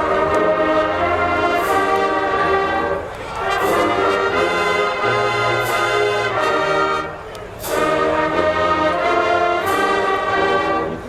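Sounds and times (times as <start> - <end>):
marching band brass playing: 0.0 - 11.0.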